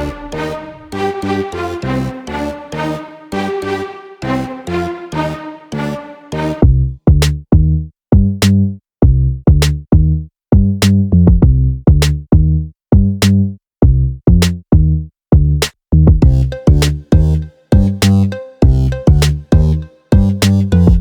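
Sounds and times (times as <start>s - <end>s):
drum machine beat with bass notes: 0.0s - 2.1s, 6.6s - 21.0s.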